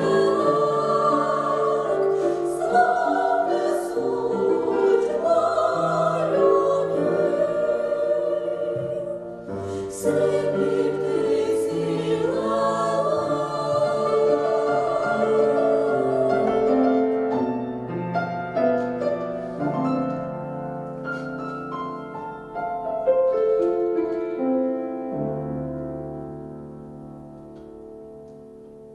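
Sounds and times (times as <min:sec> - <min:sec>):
vocal ensemble singing in chorus: 0:00.0 - 0:17.3.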